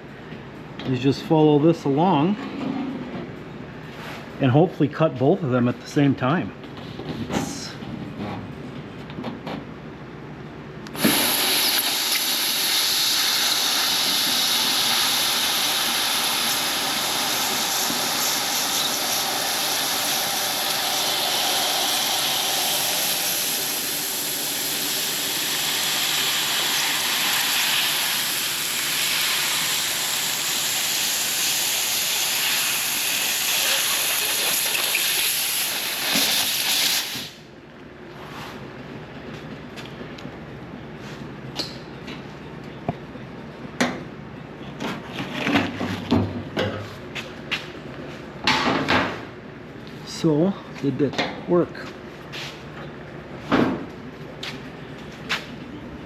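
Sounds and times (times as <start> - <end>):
laser cutting metal hiss: 11.0 - 37.4.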